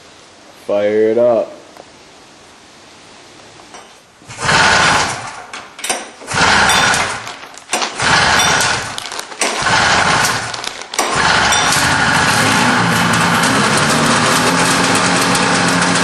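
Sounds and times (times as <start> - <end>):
snowmobile engine revving: 4.3 - 5.4, 6.3 - 7.2, 8.0 - 9.0, 9.6 - 16.0.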